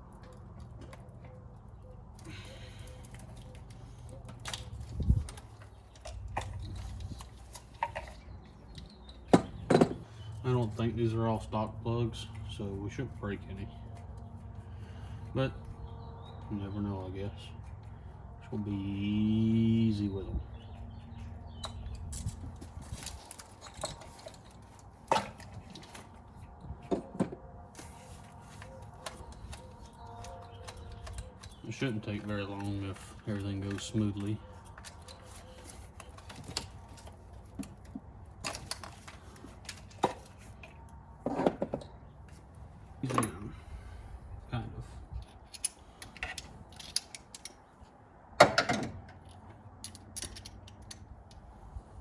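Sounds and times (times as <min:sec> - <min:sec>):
tools clicking and knocking: 0:03.0 - 0:10.1, 0:45.2 - 0:47.6, 0:48.4 - 0:51.4
hand tools clinking on metal: 0:28.6 - 0:37.8.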